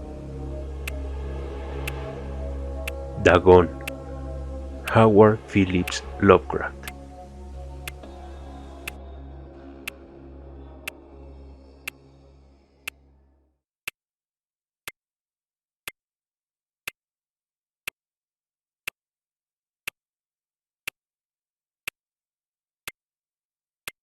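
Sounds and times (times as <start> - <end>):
low background music: 0.0 - 13.4
clock ticking: 1.8 - 2.0, 2.8 - 7.2, 7.8 - 9.0, 9.7 - 10.0.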